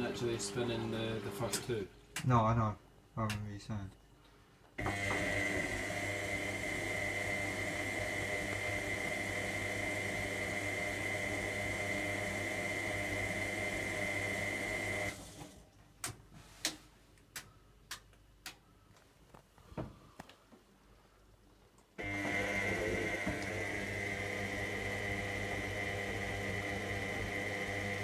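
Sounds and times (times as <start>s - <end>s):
washing machine running water: 0.0s - 1.8s, 4.8s - 15.6s, 22.0s - 28.0s.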